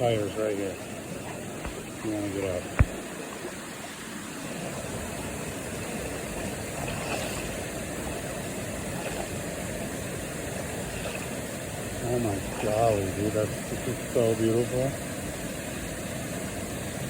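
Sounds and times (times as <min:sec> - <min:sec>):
water rushing from waterfalls: 0:00.0 - 0:17.0.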